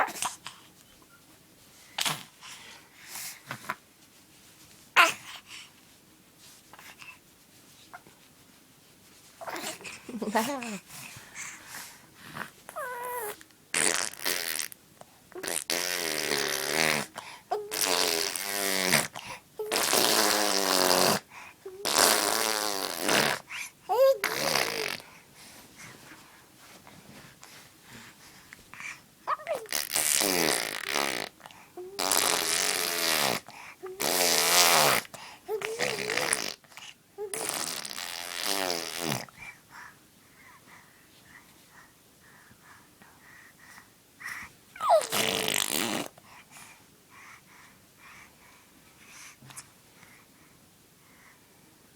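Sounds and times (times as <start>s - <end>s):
baby blowing raspberries: 13.7s - 14.8s, 15.4s - 25.2s, 29.5s - 39.3s, 44.8s - 46.2s
baby squealing: 44.8s - 45.2s.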